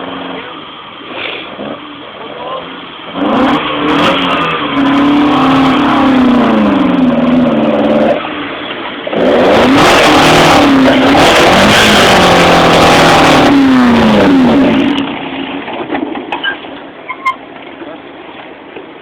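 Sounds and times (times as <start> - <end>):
car engine revving hard: 2.6 - 15.2.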